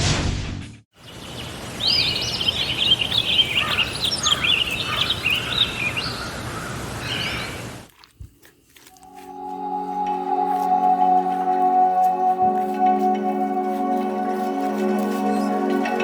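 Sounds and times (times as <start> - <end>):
outdoor background hiss: 0.9 - 8.7
bird chirping: 1.0 - 7.9
music: 9.0 - 16.0.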